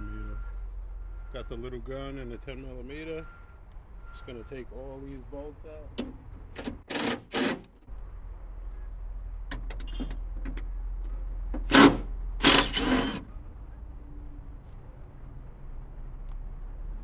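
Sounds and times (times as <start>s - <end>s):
cordless impact gun bursts: 11.7s - 13.2s.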